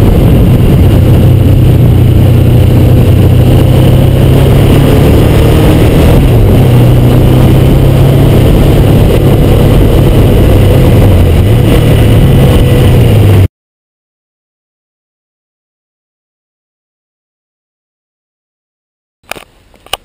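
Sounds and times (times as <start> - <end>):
motorcycle engine running: 0.0 - 13.5.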